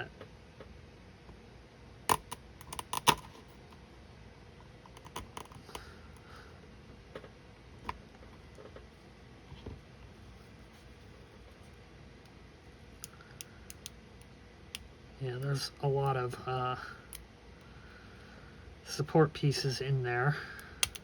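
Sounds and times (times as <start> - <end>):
plastic pieces clicking and snapping: 2.1 - 3.3, 4.9 - 5.8.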